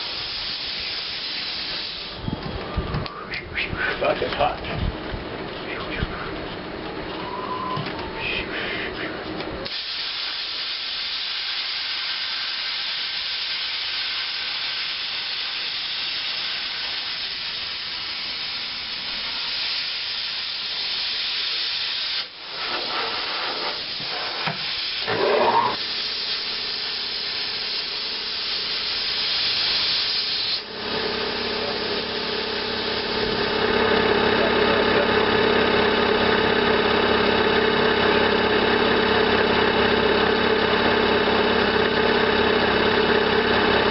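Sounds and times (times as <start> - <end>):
plasma cutter hissing: 0.0 - 2.2, 9.6 - 35.1
machine hum with tones: 1.8 - 9.6.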